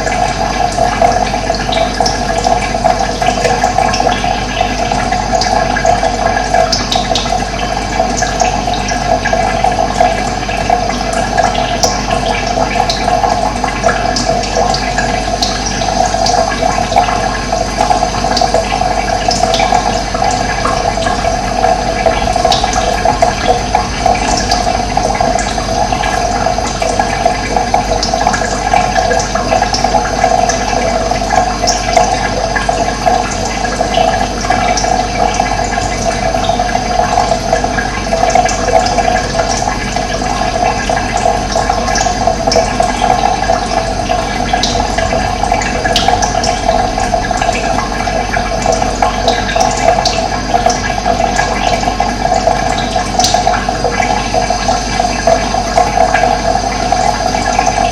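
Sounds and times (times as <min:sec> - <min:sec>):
water rushing: 0:09.0 - 0:57.9.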